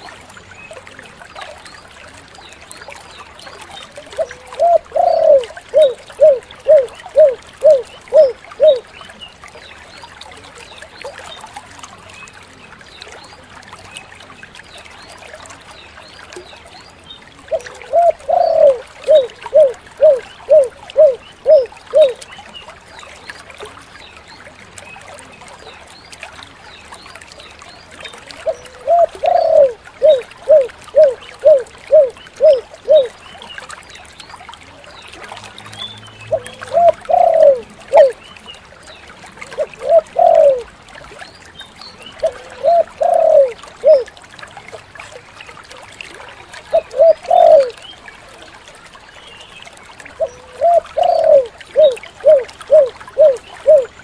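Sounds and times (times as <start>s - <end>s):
dove cooing: 4.2s - 8.8s, 17.5s - 22.2s, 28.4s - 33.1s, 36.3s - 38.2s, 39.6s - 40.7s, 42.2s - 44.1s, 46.7s - 47.8s, 50.2s - 53.9s.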